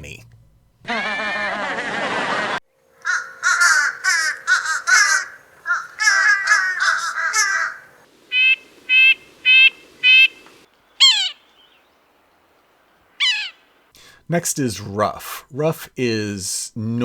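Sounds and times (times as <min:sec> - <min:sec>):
downward-sliding bird call: 0:03.0 - 0:11.4
nasal bird notes: 0:03.0 - 0:12.0
harsh nasal bird calls: 0:03.0 - 0:12.1, 0:13.2 - 0:13.9.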